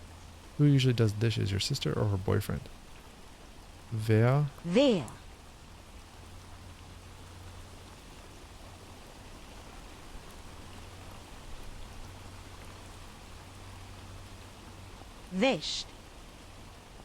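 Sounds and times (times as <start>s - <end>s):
light rain falling: 0.0s - 17.0s.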